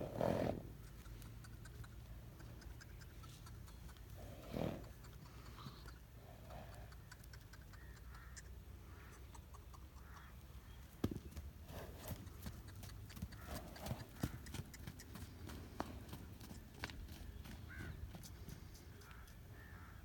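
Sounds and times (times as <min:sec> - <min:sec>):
horse hooves clopping on hard ground: 0:10.9 - 0:19.3.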